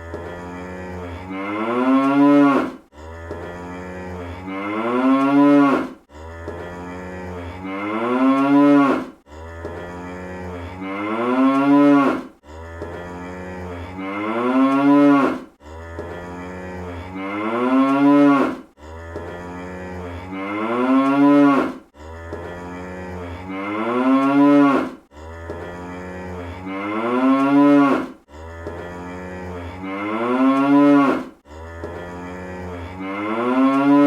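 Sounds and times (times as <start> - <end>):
cartoon cow moo: 0.0 - 34.0.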